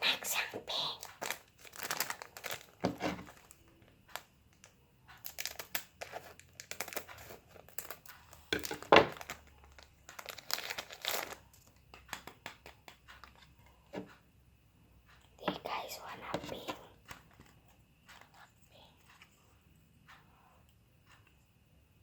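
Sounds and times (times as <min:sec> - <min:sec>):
plastic packaging crinkling: 0:00.1 - 0:04.6, 0:05.2 - 0:12.2.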